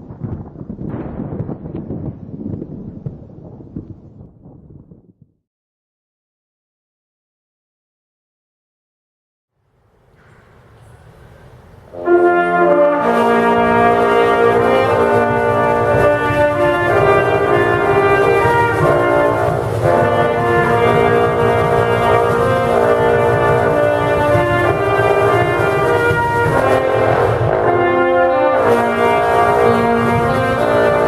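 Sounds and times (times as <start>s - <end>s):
bagpipe drones: 11.9s - 31.0s
bagpipe chanter tune: 12.0s - 31.0s.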